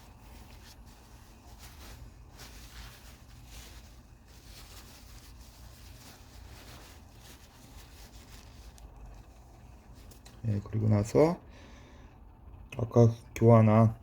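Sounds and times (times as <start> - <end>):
cloth rubbing on metal: 0.0 - 10.2
low steady hum: 0.0 - 14.0.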